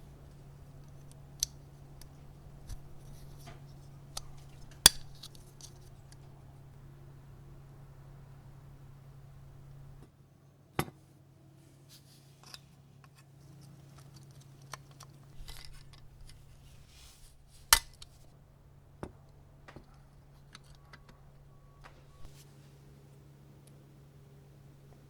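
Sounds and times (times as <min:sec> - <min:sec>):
soft rustling: 0:00.0 - 0:10.0, 0:11.6 - 0:23.1
steady low hum: 0:00.0 - 0:10.7, 0:11.3 - 0:25.0
small hard parts clicking: 0:12.4 - 0:16.8.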